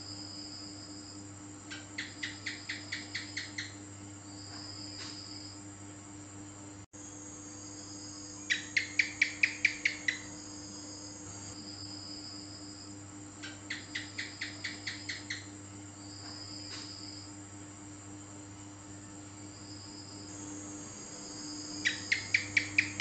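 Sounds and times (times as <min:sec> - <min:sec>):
steady low hum: 0:00.0 - 0:23.0
gecko chirping: 0:01.7 - 0:03.8, 0:08.4 - 0:10.3, 0:13.4 - 0:15.5, 0:21.4 - 0:23.0.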